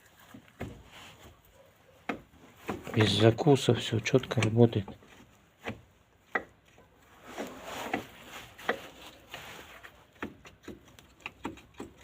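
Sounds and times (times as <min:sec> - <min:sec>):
metallic clicks and knocks: 0:10.1 - 0:12.0.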